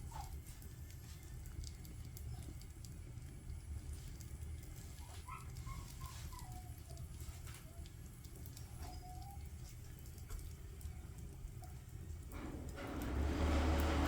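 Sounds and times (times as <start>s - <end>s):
fire rumbling and crackling: 0.0s - 14.0s.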